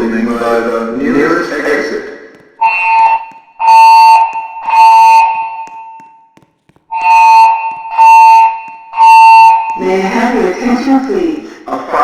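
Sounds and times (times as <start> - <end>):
fire alarm tone pulses: 2.6 - 11.1.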